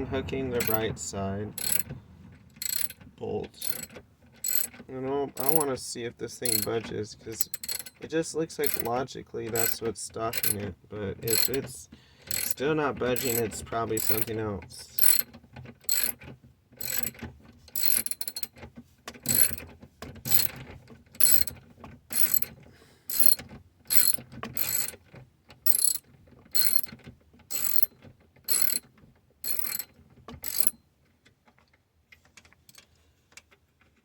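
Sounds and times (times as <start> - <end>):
ratchet wrench clicking: 0.6 - 0.9, 1.5 - 1.9, 2.5 - 3.0, 3.6 - 4.8, 5.4 - 5.7, 6.4 - 6.8, 7.4 - 8.0, 8.6 - 8.9, 9.6 - 11.7, 12.3 - 12.6, 13.2 - 14.4, 15.0 - 16.2, 16.8 - 17.2, 17.8 - 18.5, 19.2 - 19.6, 20.3 - 20.6, 21.2 - 22.5, 23.1 - 25.0, 25.6 - 30.8.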